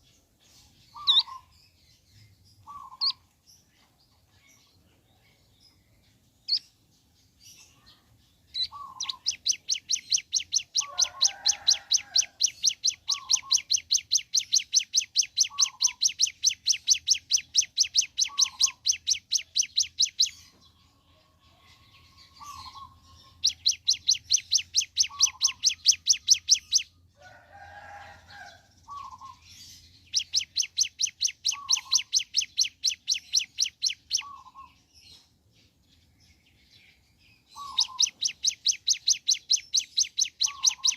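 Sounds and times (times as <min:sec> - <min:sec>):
short lower bird calls: 0:00.8 - 0:01.6, 0:02.6 - 0:03.3, 0:08.5 - 0:20.5, 0:22.1 - 0:27.0, 0:28.3 - 0:34.8, 0:37.5 - 0:40.9
bird rattling trill: 0:08.8 - 0:20.3.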